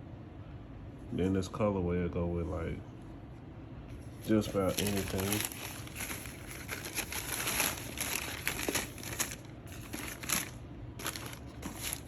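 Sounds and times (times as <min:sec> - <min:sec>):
paper crinkling and rustling: 0:04.2 - 0:12.0.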